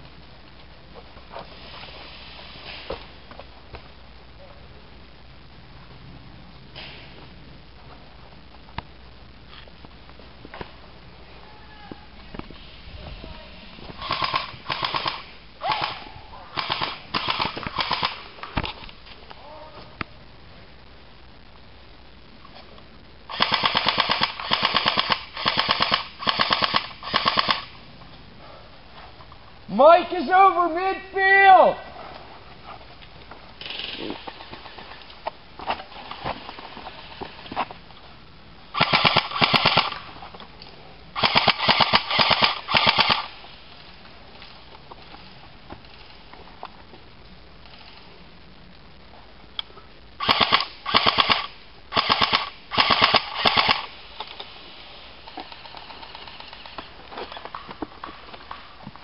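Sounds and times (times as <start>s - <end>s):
airsoft guns firing bursts: 14.0s - 18.2s, 23.3s - 27.7s, 38.7s - 40.0s, 41.2s - 43.4s, 50.2s - 53.9s.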